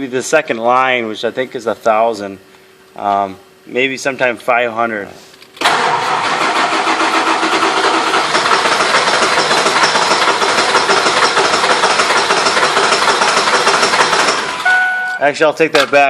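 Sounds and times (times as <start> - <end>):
diesel engine cranking on starter: 5.6 - 14.6.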